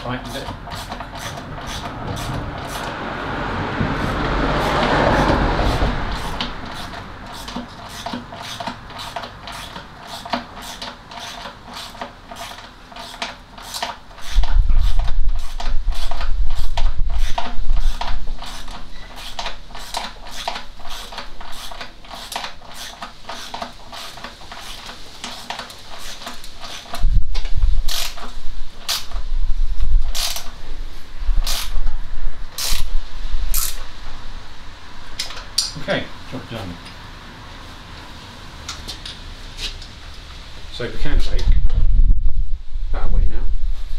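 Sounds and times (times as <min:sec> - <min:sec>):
ratchet spanner clicking: 0:00.3 - 0:03.0, 0:04.0 - 0:27.0, 0:27.8 - 0:29.2, 0:30.1 - 0:30.5, 0:31.4 - 0:31.7, 0:32.6 - 0:32.9, 0:33.5 - 0:33.8.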